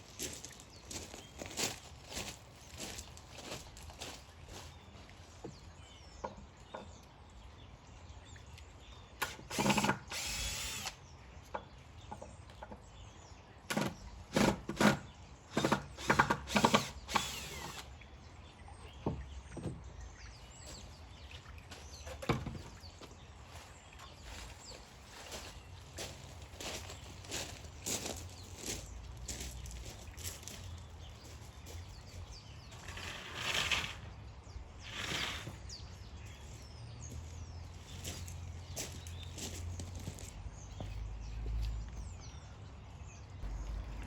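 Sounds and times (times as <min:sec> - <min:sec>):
power drill bursts: 0:09.2 - 0:11.0, 0:13.7 - 0:17.9.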